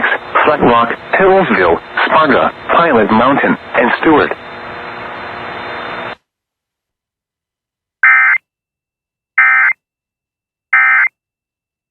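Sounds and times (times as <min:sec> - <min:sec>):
steady broadcast hiss: 0:00.0 - 0:06.2.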